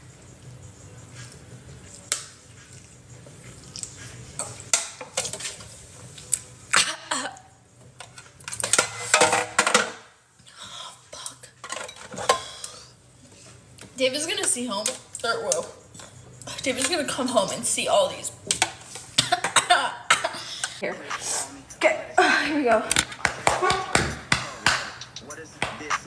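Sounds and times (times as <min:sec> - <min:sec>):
drink containers clinking: 0:07.9 - 0:10.2, 0:11.5 - 0:20.8.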